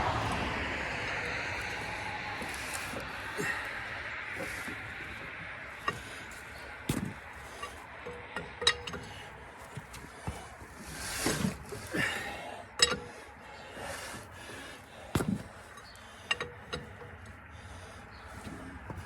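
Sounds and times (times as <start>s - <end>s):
engine hand crank clinks and knocks: 0.0s - 19.0s
man breathing hard: 0.0s - 19.0s.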